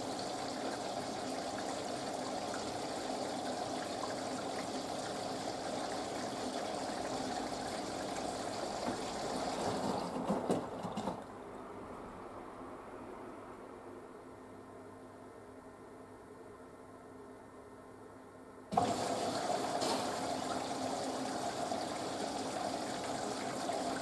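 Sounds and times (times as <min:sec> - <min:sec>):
water running in washing machine: 0:00.0 - 0:11.7, 0:18.7 - 0:24.0.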